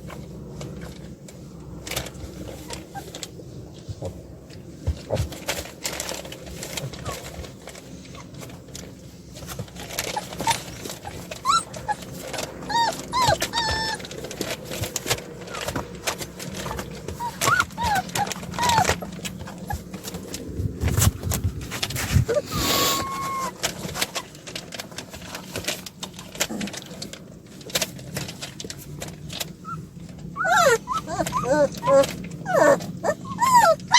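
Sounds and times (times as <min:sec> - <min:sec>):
puppies whimpering: 0:09.7 - 0:20.3, 0:22.2 - 0:24.2, 0:29.6 - 0:33.9.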